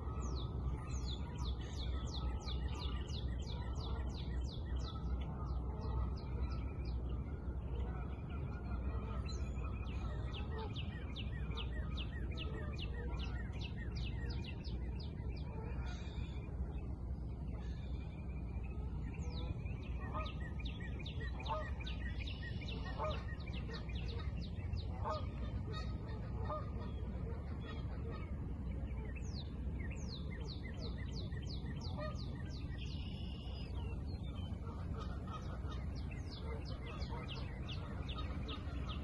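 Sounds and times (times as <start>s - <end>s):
steady low rumble: 0.0s - 39.0s
geese honking: 19.2s - 29.2s, 31.8s - 39.0s.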